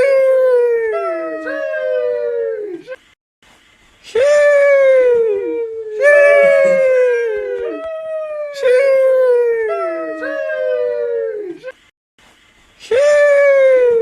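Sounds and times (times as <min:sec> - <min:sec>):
high falsetto cry sliding down: 0:06.1 - 0:08.0.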